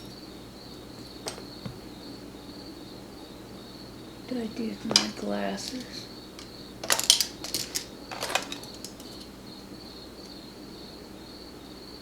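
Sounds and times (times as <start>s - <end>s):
faint high-pitched hum: 0.0s - 12.0s
small hard objects clinking: 4.9s - 9.4s.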